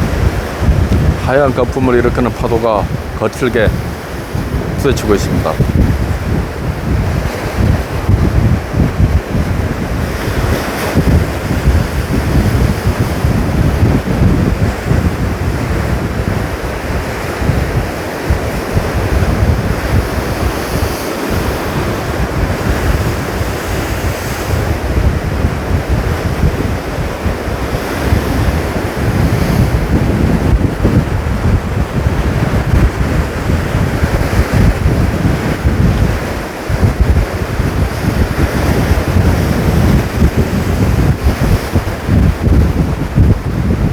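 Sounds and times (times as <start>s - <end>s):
storm surf breaking: 0.0s - 43.9s
wind buffeting microphone: 0.0s - 43.9s.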